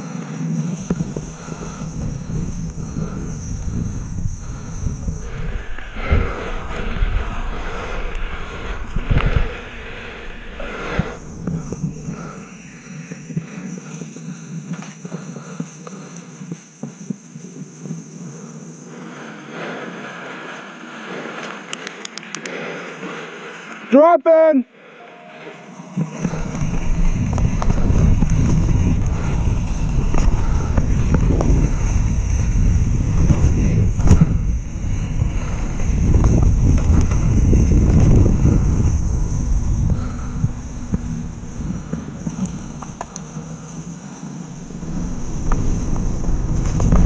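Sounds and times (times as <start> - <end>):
steady low hum: 0.0 - 21.7, 24.8 - 47.0
hiss of tyres and wind: 0.0 - 24.0, 24.8 - 47.0.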